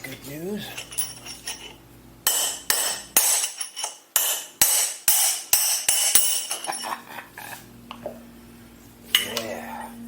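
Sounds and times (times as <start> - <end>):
hammer striking steel punch: 2.2 - 6.5.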